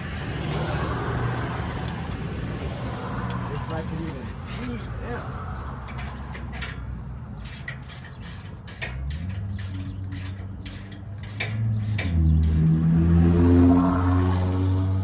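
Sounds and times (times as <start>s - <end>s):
metallic clicks of hand tools: 5.6s - 12.8s.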